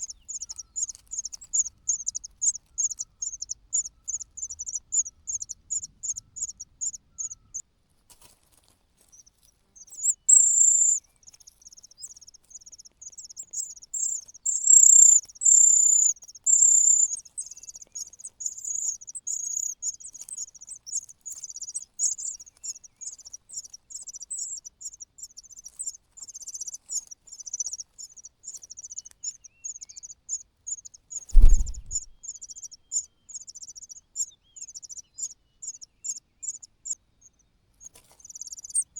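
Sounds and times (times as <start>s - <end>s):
dull thump: 31.4s - 32.1s.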